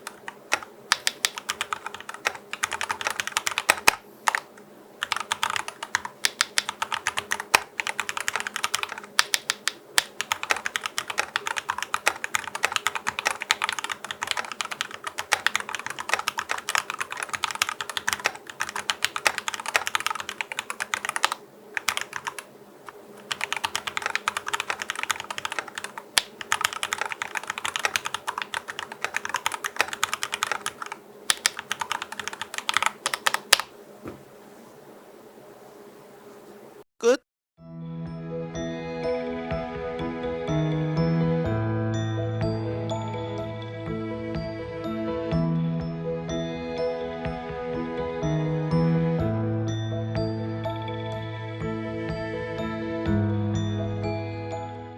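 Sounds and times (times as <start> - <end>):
mechanical keyboard typing: 0.0 - 33.7.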